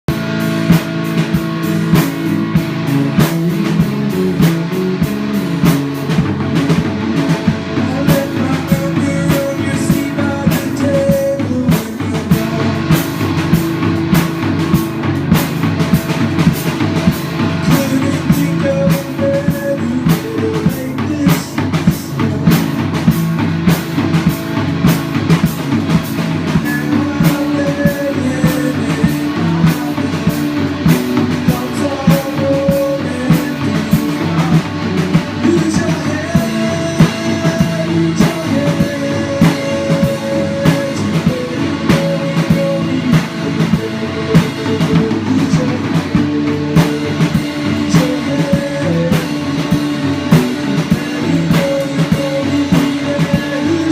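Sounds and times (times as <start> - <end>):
drum kit beat: 0.0 - 53.9
electric guitar: 0.0 - 53.9
rock band playing: 0.0 - 53.9.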